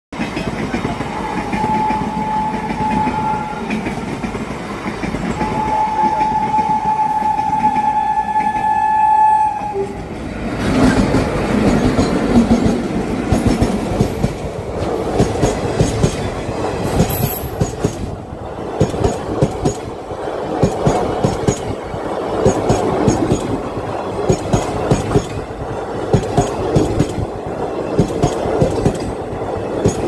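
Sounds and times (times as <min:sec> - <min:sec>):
train rumbling past: 0:00.2 - 0:30.0
train horn steady tone: 0:01.0 - 0:03.9, 0:05.3 - 0:10.1.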